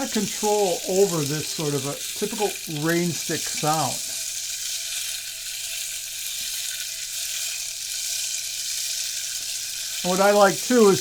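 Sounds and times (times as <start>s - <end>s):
rain stick beads rolling: 0.0s - 4.4s.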